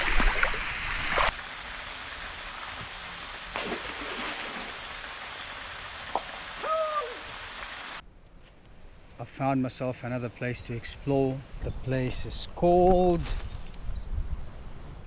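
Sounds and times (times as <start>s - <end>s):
rushing water: 0.0s - 8.0s.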